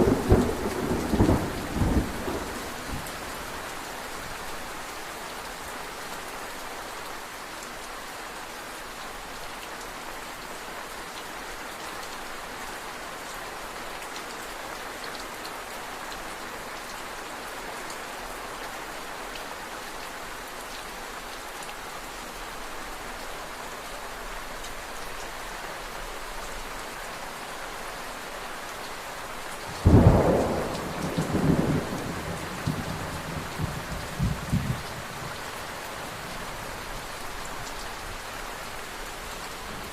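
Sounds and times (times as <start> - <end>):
thunder crack and rumbles: 0.0 - 3.2, 29.7 - 35.4
steady rainfall: 0.0 - 39.9.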